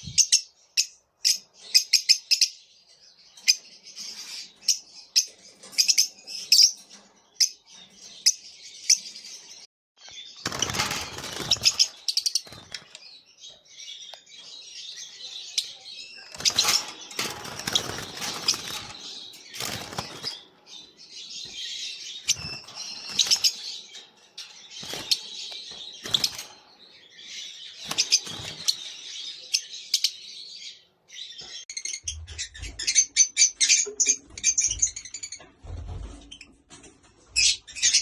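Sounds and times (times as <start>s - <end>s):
lovebirds twittering: 0.0s - 35.4s
sharp bird chirps: 3.3s - 30.7s
wing flutters: 10.4s - 13.1s, 16.3s - 20.8s, 22.3s - 23.9s.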